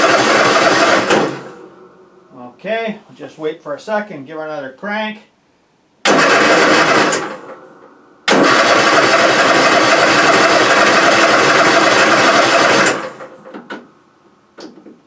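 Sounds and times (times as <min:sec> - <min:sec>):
electric starter cranking engine: 0:00.0 - 0:01.6, 0:06.1 - 0:07.6, 0:08.3 - 0:13.5.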